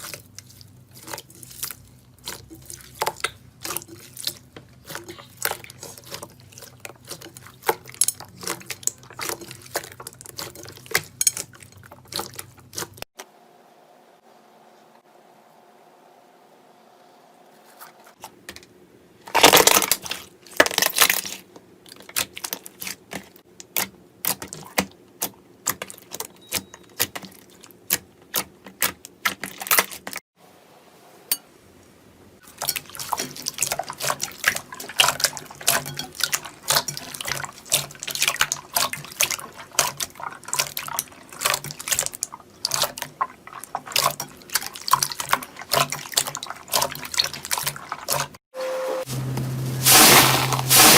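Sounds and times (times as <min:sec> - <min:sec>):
slime squelching: 0:00.0 - 0:13.1, 0:19.4 - 0:30.2, 0:32.4 - 0:48.4.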